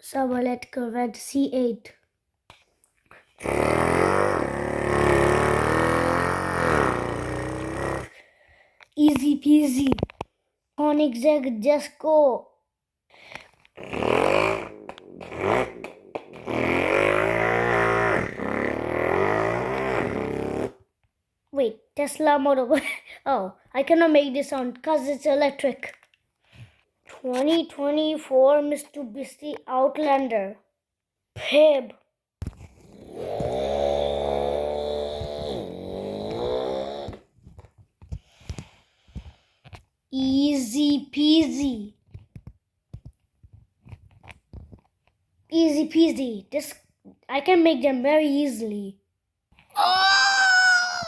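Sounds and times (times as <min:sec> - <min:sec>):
child imitating car engine: 0:03.4 - 0:08.2, 0:13.8 - 0:20.8, 0:32.9 - 0:37.2, 0:49.8 - 0:51.0.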